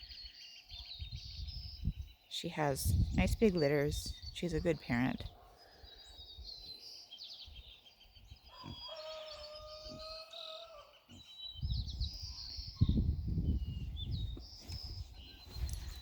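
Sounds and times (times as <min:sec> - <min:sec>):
small birds chirping: 0:00.0 - 0:16.0
rooster crowing: 0:08.5 - 0:11.0.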